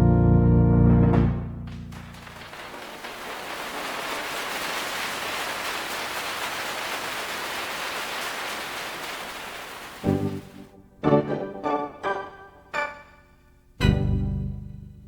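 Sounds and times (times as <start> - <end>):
steady hiss: 1.9 - 10.7.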